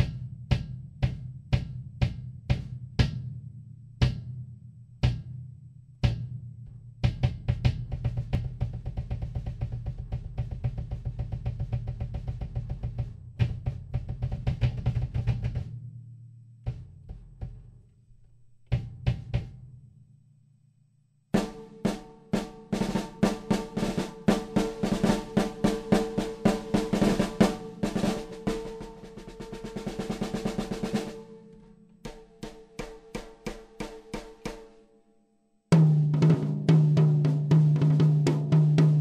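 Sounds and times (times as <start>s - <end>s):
drum kit playing: 21.4s - 31.3s
cymbals: 21.4s - 34.9s.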